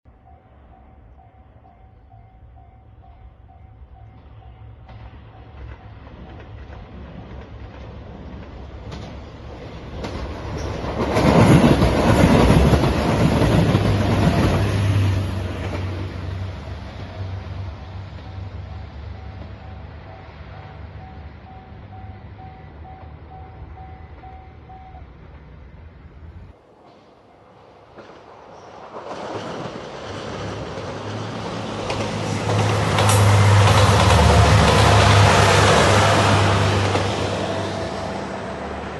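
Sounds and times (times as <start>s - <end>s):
diesel train passing: 0.1s - 38.9s
wheel-on-rail rumble: 4.2s - 27.0s, 27.8s - 38.9s
wheels clicking over rail joints: 4.9s - 14.8s, 26.8s - 38.2s.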